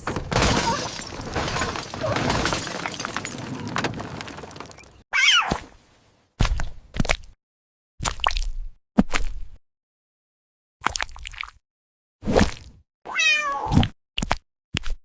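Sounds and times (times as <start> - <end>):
crash and clatter: 0.0 - 5.0.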